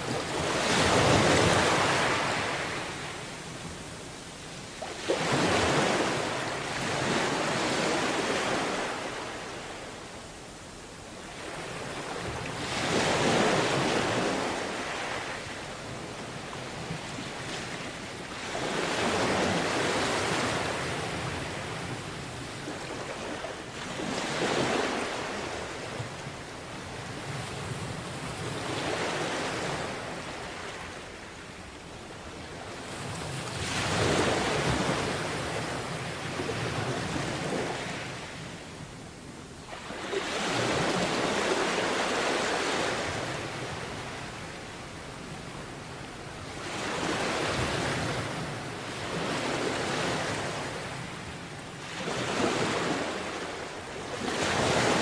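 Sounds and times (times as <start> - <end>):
sea waves washing onto beach: 0.0 - 10.2.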